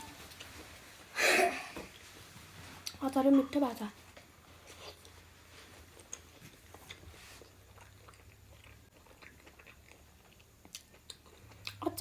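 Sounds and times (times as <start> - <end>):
chewing food: 5.8 - 12.0.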